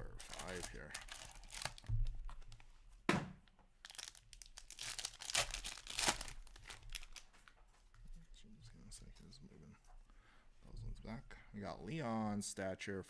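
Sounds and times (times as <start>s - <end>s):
packaging tearing and rustling: 0.0s - 2.6s, 3.8s - 7.5s.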